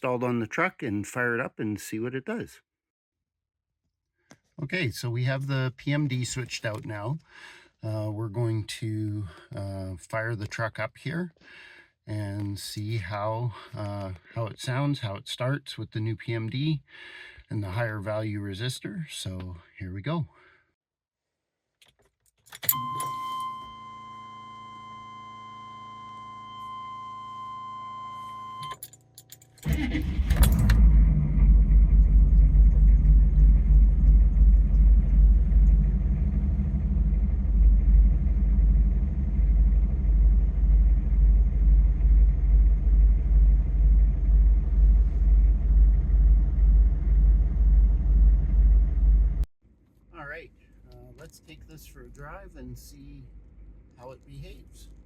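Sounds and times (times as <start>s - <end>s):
keys in ignition: 21.8s - 23.6s, 28.1s - 30.9s
diesel engine cranking: 28.7s - 49.4s
diesel engine idling: 29.7s - 49.4s.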